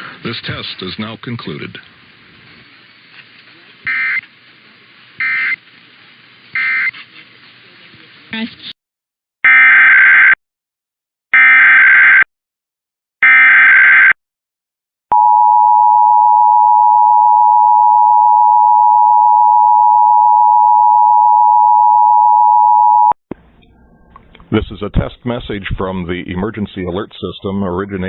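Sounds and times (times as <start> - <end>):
steady two-tone beep: 15.1 - 23.2.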